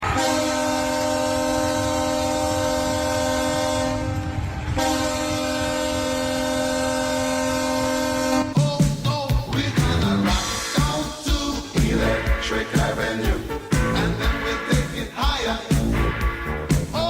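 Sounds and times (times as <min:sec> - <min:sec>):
deep multi-tone air horn: 0:00.0 - 0:08.8, 0:09.6 - 0:17.0
goal music: 0:08.4 - 0:17.0.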